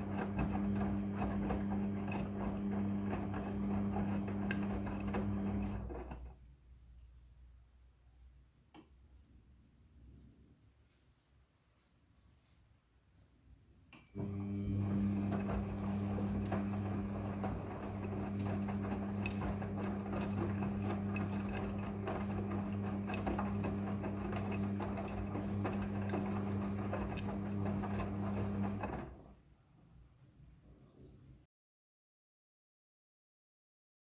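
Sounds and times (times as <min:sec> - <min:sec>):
washing machine humming: 0:00.0 - 0:06.2, 0:14.2 - 0:29.3.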